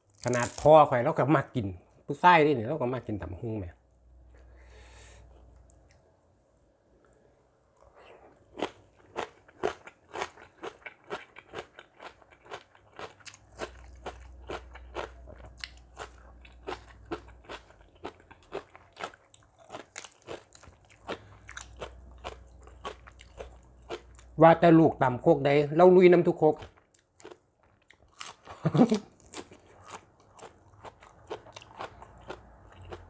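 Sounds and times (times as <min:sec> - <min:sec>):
chewing crunchy food: 0:00.0 - 0:00.7, 0:07.8 - 0:24.4, 0:26.6 - 0:33.0.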